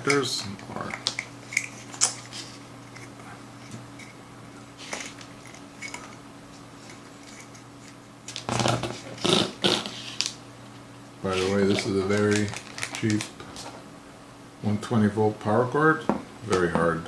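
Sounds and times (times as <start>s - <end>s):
steady low hum: 0.0s - 17.0s
plastic clicks and clatter: 11.8s - 13.3s.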